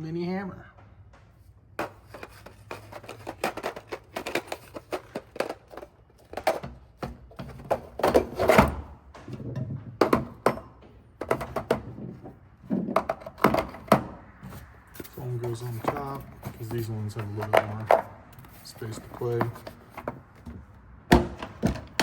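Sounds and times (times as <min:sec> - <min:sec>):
metal tools clicking on plastic: 0:01.8 - 0:06.7.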